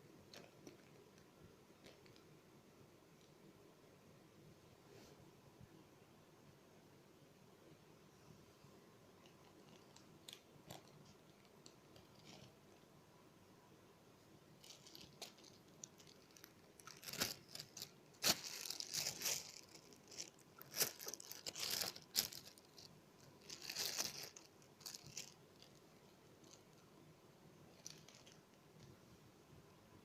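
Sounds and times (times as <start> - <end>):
crinkling handling noise: 0.1 - 2.4, 8.7 - 12.9, 14.5 - 27.0, 27.6 - 29.0.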